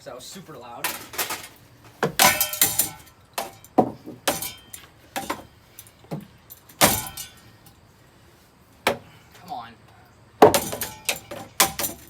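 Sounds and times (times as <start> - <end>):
debris clattering against fan blades: 0.0 - 7.9, 10.4 - 12.0.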